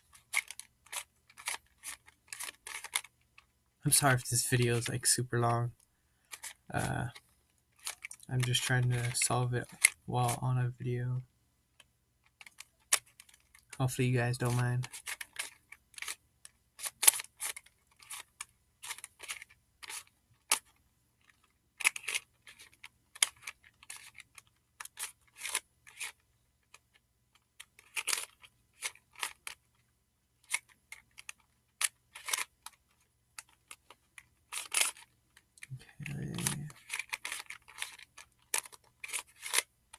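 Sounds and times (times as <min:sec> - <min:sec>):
twisty puzzle clicking: 0:00.1 - 0:05.6, 0:06.3 - 0:10.4, 0:11.8 - 0:29.8, 0:30.4 - 0:39.7.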